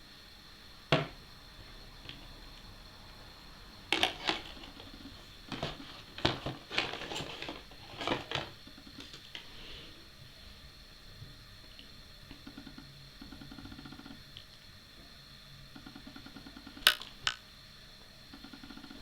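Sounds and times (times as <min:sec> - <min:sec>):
faint high whine: 0:00.0 - 0:19.0
hard objects knocking and clicking: 0:00.9 - 0:01.2, 0:03.9 - 0:09.1.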